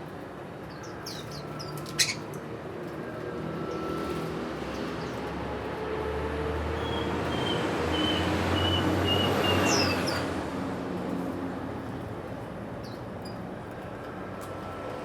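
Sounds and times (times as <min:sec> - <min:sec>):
bird chirps: 0:01.0 - 0:02.2.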